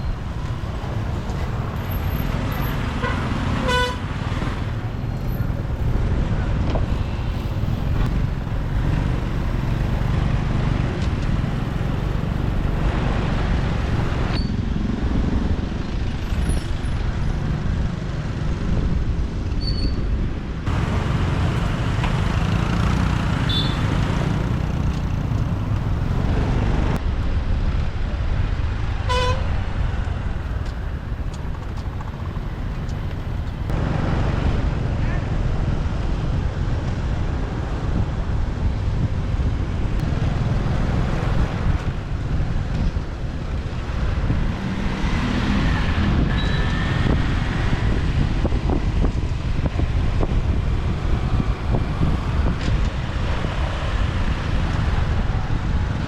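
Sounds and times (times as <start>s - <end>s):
motorbike engine and road rumble: 0.0s - 56.0s
vehicle horn toot: 3.0s - 4.1s, 23.4s - 24.1s, 29.1s - 29.5s.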